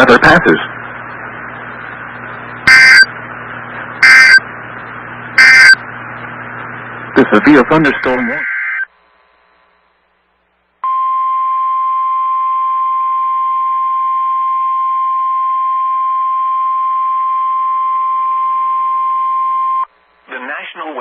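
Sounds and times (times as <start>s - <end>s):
steady warning alarm tone: 2.6s - 3.1s, 4.0s - 4.5s, 5.4s - 5.8s.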